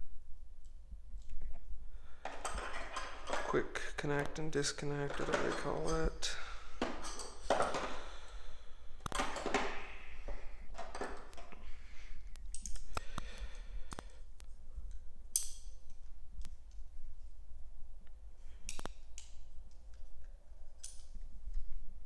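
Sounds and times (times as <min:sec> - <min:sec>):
metal scraping: 0:02.2 - 0:11.8
metal pliers clicking: 0:14.9 - 0:16.6, 0:20.8 - 0:21.2.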